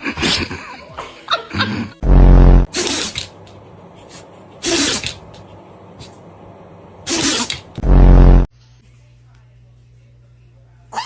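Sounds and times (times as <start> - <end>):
very loud low sound: 2.0 - 2.8, 7.7 - 8.5
dog sneezing: 2.7 - 3.4, 4.0 - 5.4, 6.0 - 6.2, 7.0 - 7.8.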